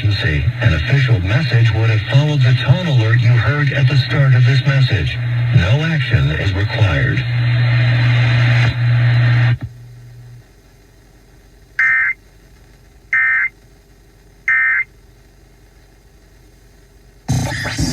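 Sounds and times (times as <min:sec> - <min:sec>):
loud hiss with low hum: 0:00.0 - 0:17.9
digital data bursts: 0:11.8 - 0:12.2.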